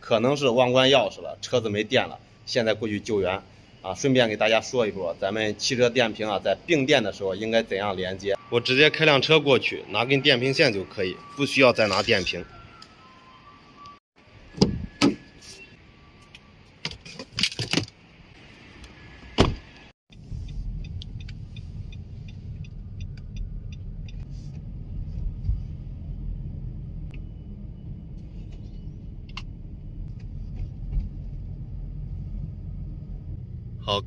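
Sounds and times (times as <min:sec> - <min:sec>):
car engine and road rumble: 0:13.8 - 0:34.0.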